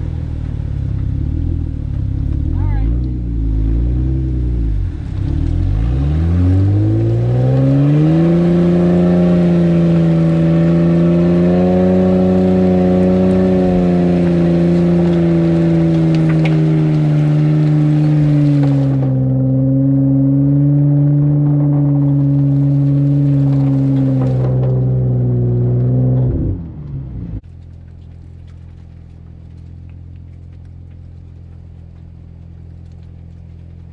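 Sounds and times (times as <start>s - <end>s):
engine revving hard: 2.5s - 27.4s.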